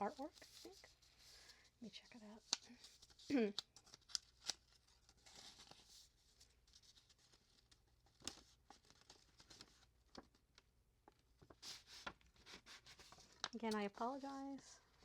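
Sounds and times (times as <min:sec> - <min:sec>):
envelope being opened: 0:02.4 - 0:10.4.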